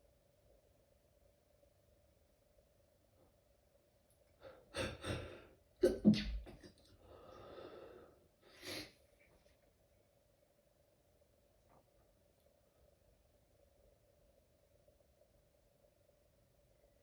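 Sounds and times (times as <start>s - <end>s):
breathing: 6.9s - 9.0s.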